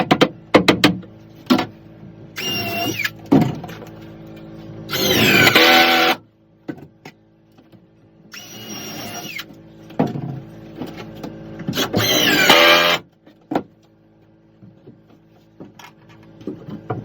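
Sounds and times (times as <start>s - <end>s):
power drill whining: 2.4s - 3.2s, 4.9s - 6.2s, 8.3s - 9.5s, 11.7s - 13.0s.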